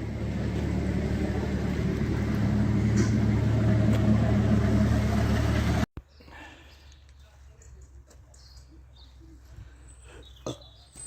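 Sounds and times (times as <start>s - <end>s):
car engine and road rumble: 0.0s - 6.2s.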